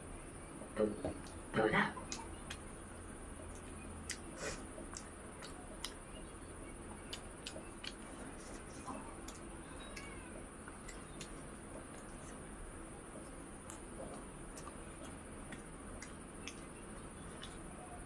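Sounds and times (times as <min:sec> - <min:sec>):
wet chewing mouth clicks: 0:03.4 - 0:06.1, 0:07.0 - 0:12.5, 0:13.1 - 0:17.8.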